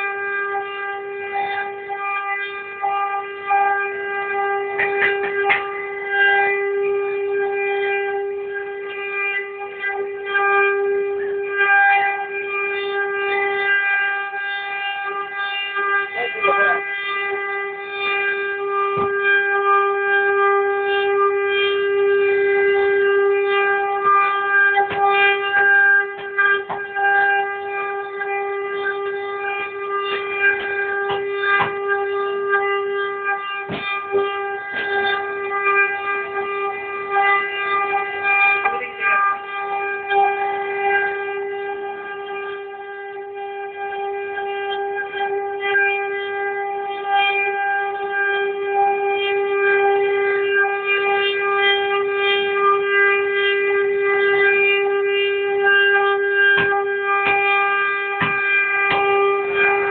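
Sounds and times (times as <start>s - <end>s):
bit cutting wood crackles: 23.8s - 36.8s, 56.5s - 59.9s.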